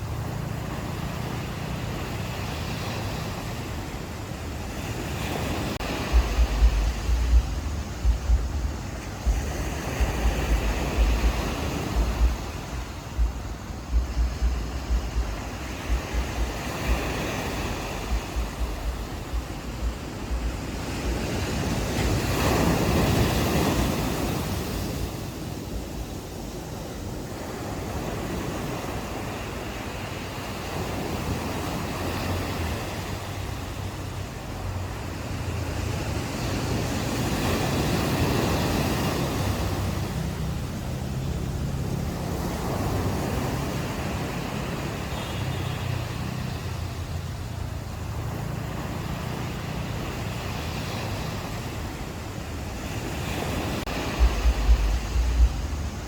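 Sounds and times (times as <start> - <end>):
ocean waves on a beach: 0.0 - 56.0
wind buffeting microphone: 0.0 - 56.0
low steady hum: 6.1 - 17.0, 17.9 - 21.2, 54.2 - 56.0.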